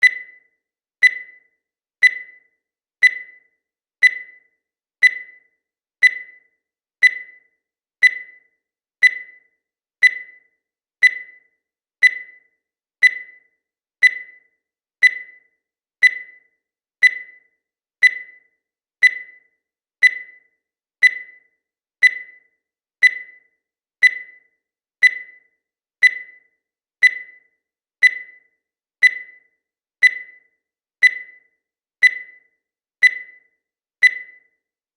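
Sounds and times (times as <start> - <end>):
timer beeping: 0.0 - 34.8.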